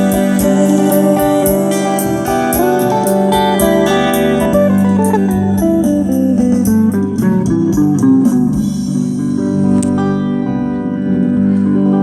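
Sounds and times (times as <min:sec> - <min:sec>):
drums and cymbals: 0:00.0 - 0:09.6
melodic electric guitar: 0:00.0 - 0:12.0.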